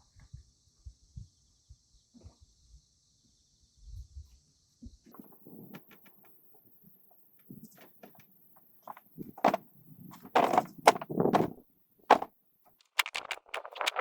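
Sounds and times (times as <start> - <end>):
firewood logs knocking and thudding: 8.9 - 12.3.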